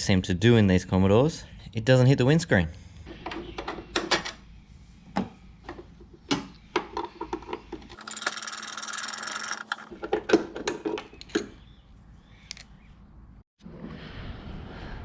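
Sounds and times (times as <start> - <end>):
fast-rattling mechanical whirr: 8.0 - 9.9.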